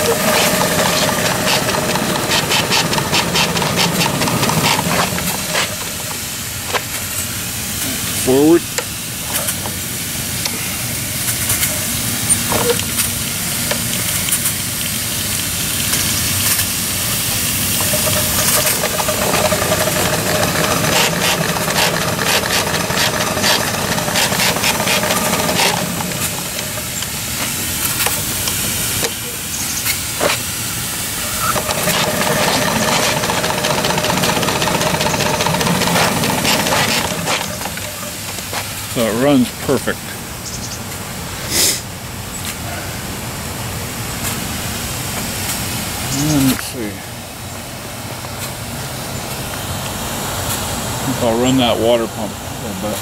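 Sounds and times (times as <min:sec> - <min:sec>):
rapid clicking of steam engine: 0:00.0 - 0:10.6, 0:11.2 - 0:39.8
steam hissing: 0:00.0 - 0:40.3, 0:41.3 - 0:41.9.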